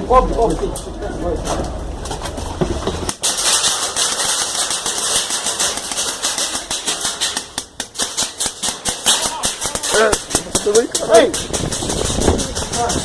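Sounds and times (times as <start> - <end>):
airsoft guns firing in bursts: 3.2 - 13.0.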